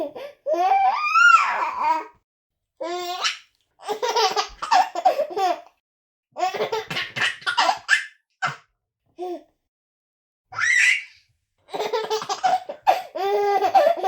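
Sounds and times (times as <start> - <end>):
baby laughing: 2.8 - 5.7, 6.4 - 8.6, 11.7 - 14.0.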